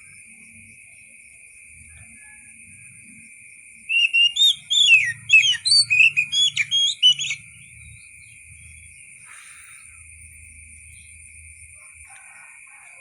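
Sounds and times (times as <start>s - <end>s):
bird singing whistled notes: 3.8s - 10.0s.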